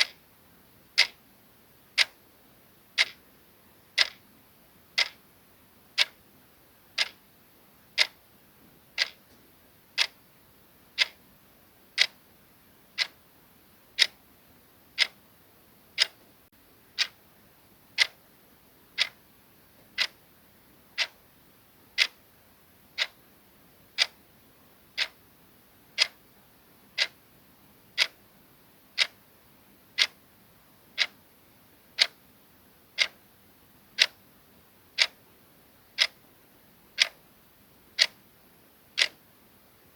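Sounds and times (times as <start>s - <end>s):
clock ticking: 0.0s - 0.2s, 1.0s - 1.2s, 2.0s - 2.2s, 2.9s - 3.2s, 3.9s - 4.2s, 4.9s - 5.2s, 5.9s - 6.2s, 6.9s - 7.2s, 8.0s - 8.2s, 8.9s - 9.4s, 10.0s - 10.2s, 10.9s - 11.2s, 11.9s - 12.2s, 13.0s - 13.2s, 13.9s - 14.2s, 14.9s - 15.2s, 15.9s - 16.2s, 17.0s - 17.2s, 18.0s - 18.2s, 19.0s - 19.2s, 19.8s - 20.2s, 21.0s - 21.2s, 21.9s - 22.2s, 22.9s - 23.2s, 24.0s - 24.2s, 24.9s - 25.2s, 26.0s - 26.2s, 27.0s - 27.2s, 27.9s - 28.2s, 28.9s - 29.2s, 30.0s - 30.2s, 30.9s - 31.2s, 32.0s - 32.2s, 33.0s - 33.2s, 33.9s - 34.2s, 35.0s - 35.3s, 35.9s - 36.2s, 37.0s - 37.2s, 38.0s - 38.2s, 39.0s - 39.2s.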